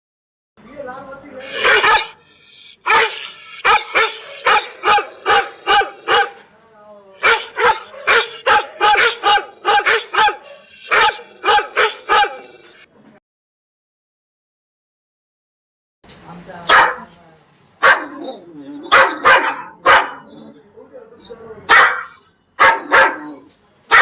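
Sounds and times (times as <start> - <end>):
dog barking: 1.5 - 2.2, 2.8 - 6.4, 7.2 - 12.6, 16.7 - 17.1, 17.8 - 20.4, 21.7 - 24.0.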